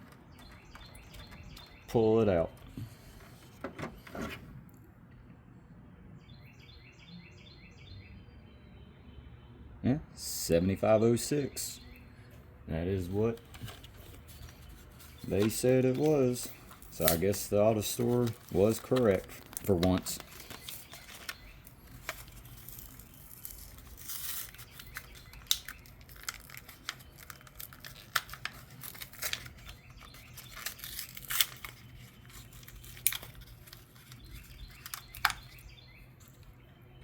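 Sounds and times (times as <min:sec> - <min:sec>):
sharp clicks and rustles: 0:00.0 - 0:04.8, 0:13.2 - 0:36.6
packaging tearing and crinkling: 0:13.4 - 0:35.6.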